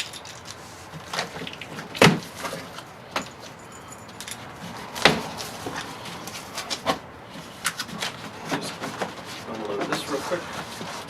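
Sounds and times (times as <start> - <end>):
light knocks and rustles: 0.0 - 11.0
boxed computer case thumping: 1.8 - 3.3, 8.2 - 10.2.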